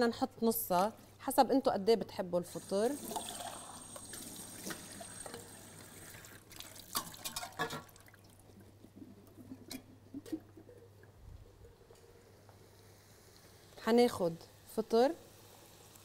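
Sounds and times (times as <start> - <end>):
liquid pouring and dripping: 3.0 - 13.6.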